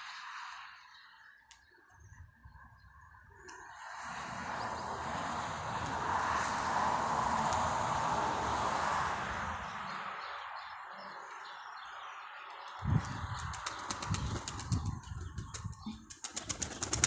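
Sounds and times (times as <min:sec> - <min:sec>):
wind gusting against microphone: 0:03.9 - 0:10.2, 0:12.8 - 0:17.0.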